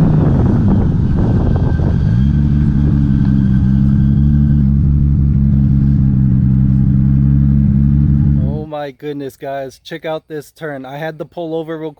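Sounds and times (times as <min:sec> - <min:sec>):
car engine running: 0:00.0 - 0:08.6.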